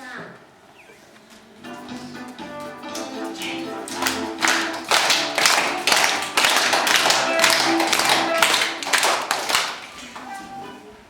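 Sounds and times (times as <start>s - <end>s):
music: 1.6s - 9.6s, 10.2s - 11.0s
sharp claps: 1.7s - 10.0s.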